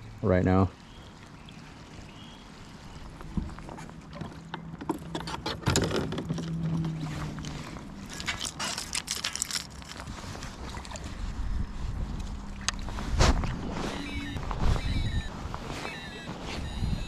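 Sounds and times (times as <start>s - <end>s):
fishing gear clicking and rattling: 4.2s - 11.1s.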